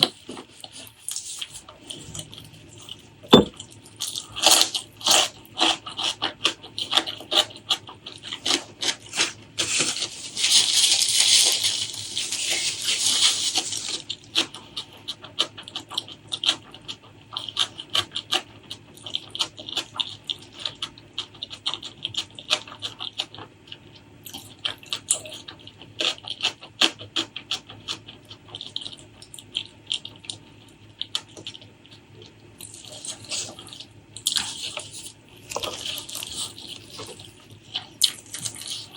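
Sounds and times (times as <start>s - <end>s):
wet chewing: 0.0s - 38.9s.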